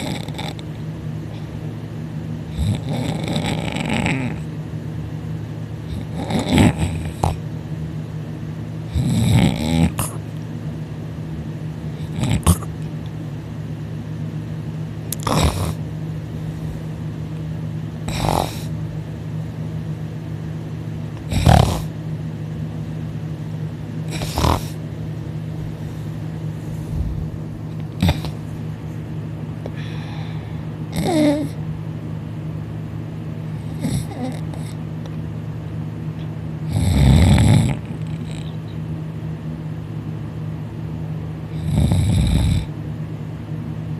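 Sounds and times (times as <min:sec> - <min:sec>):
man snoring loudly: 0:00.0 - 0:00.7, 0:02.5 - 0:04.5, 0:05.9 - 0:07.4, 0:08.9 - 0:10.2, 0:12.0 - 0:12.7, 0:15.2 - 0:15.8, 0:18.0 - 0:18.7, 0:21.3 - 0:21.9, 0:24.1 - 0:24.8, 0:28.0 - 0:28.3, 0:30.9 - 0:31.6, 0:33.6 - 0:34.8, 0:36.6 - 0:38.5, 0:41.5 - 0:42.7
steady low hum: 0:00.0 - 0:43.9.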